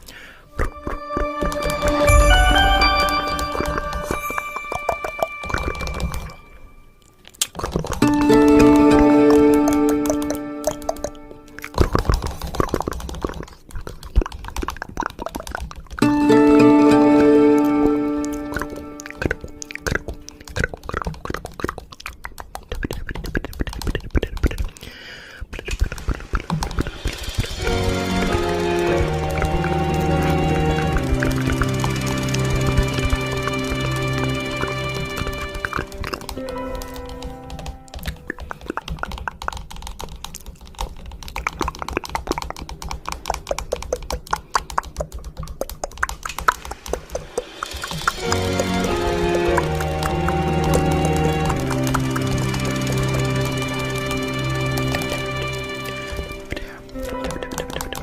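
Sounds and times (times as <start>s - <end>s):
sharp clicks and pops: 7.0s - 16.2s, 18.3s - 29.6s, 34.5s - 58.0s.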